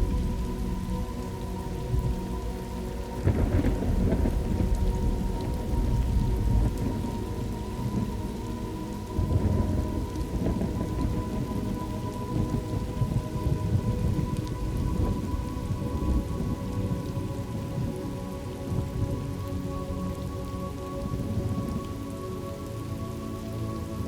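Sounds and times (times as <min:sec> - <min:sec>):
steady rain: 0:00.0 - 0:24.0
rolling thunder: 0:03.1 - 0:17.9.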